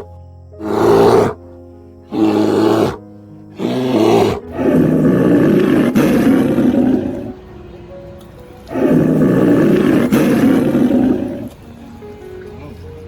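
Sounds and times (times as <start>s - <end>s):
background music: 0.0s - 13.0s
large animal roaring: 0.6s - 1.4s, 2.1s - 7.4s, 8.7s - 11.6s.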